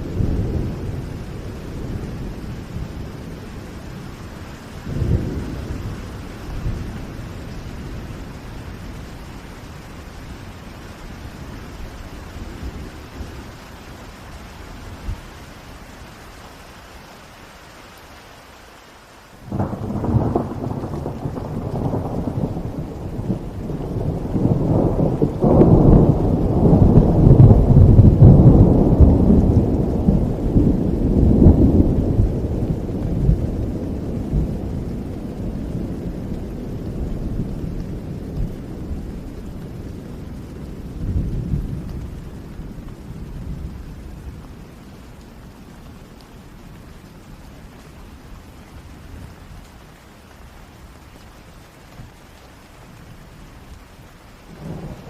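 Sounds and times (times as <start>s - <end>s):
steady rain: 0.0s - 55.0s
thunder rolling: 19.5s - 44.4s.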